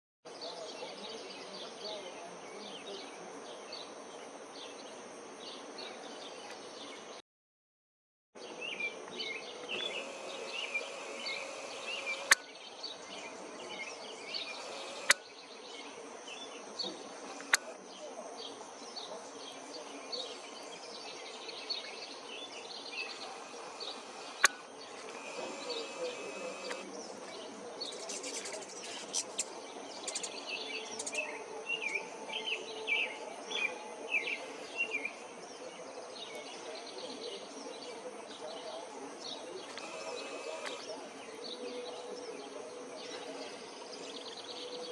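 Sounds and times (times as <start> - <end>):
outdoor background noise: 0.3 - 7.2, 8.4 - 44.9
sharp clicks: 9.8 - 12.5, 14.4 - 15.3, 17.3 - 17.8, 23.1 - 26.9, 39.7 - 40.9.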